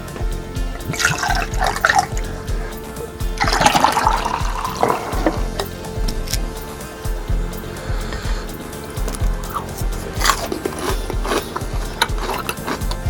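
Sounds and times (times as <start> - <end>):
music with steady beat: 0.0 - 13.0
drink pouring and splashing: 3.4 - 6.3.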